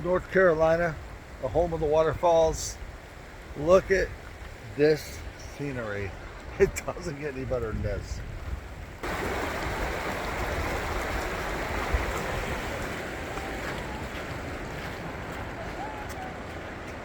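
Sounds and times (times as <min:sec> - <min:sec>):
river water rushing: 0:02.6 - 0:07.3, 0:08.6 - 0:17.0.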